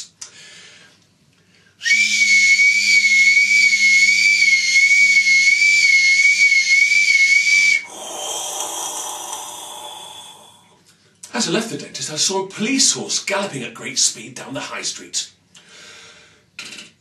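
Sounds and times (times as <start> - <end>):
man imitating a drill whine: 7.8 - 10.6
hiss: 7.8 - 10.8.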